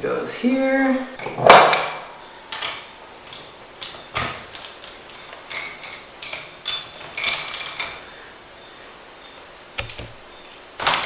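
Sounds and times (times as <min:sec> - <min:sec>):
wrenches clinking and scraping on metal: 0:02.5 - 0:08.1.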